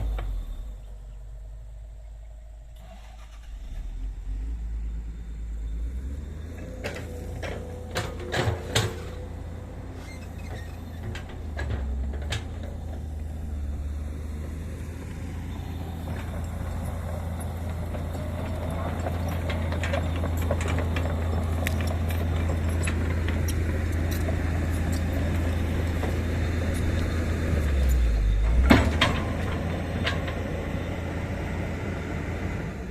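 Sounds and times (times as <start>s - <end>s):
excavator diesel engine running: 0.0s - 32.9s.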